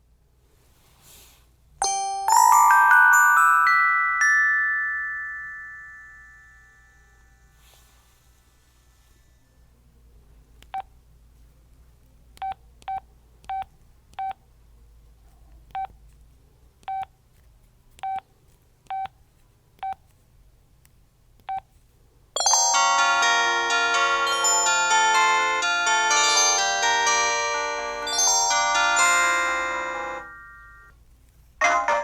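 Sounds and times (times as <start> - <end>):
phone ringtone playing: 1.8 - 7.3, 22.4 - 30.9
cell phone key beeps: 15.7 - 15.9, 18.9 - 19.1.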